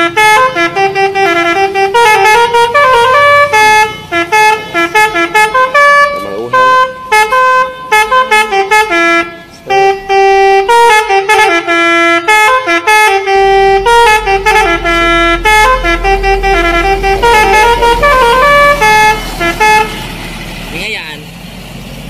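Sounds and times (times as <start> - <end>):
musical bus horn melody: 0.0 - 20.4
low rumble: 13.2 - 20.8.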